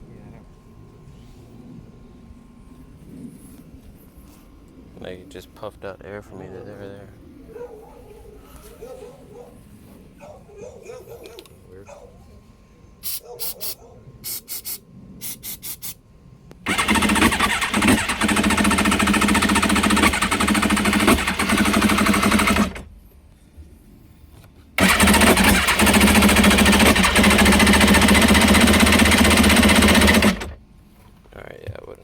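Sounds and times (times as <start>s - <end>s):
electric starter cranking engine: 16.7s - 22.9s, 24.8s - 30.6s.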